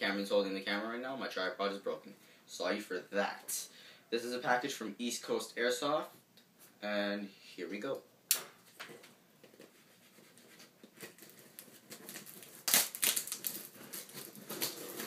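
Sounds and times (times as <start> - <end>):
cardboard crinkling: 8.7 - 15.0
knife scratching packing tape: 10.2 - 15.0
tape tearing: 10.3 - 15.0.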